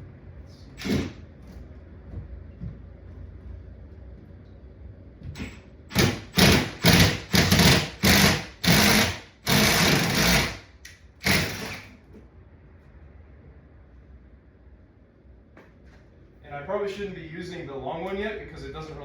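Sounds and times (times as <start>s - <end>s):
power drill boring into wood: 5.9s - 10.6s.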